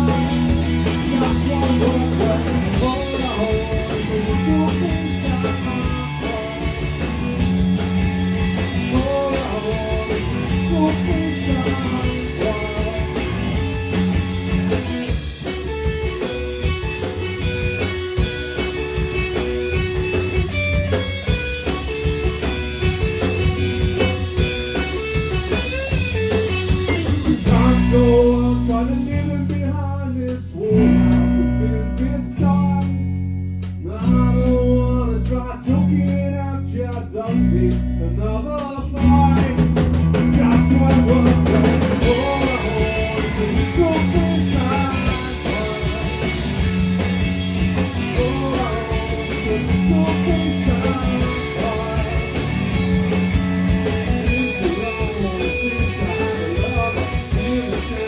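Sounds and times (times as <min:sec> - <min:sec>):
person singing: 0:00.0 - 0:07.2, 0:08.8 - 0:13.4, 0:27.2 - 0:33.0, 0:33.8 - 0:47.1, 0:47.8 - 0:58.0
drum kit: 0:00.0 - 0:30.5, 0:38.6 - 0:58.0
guitar: 0:00.0 - 0:58.0.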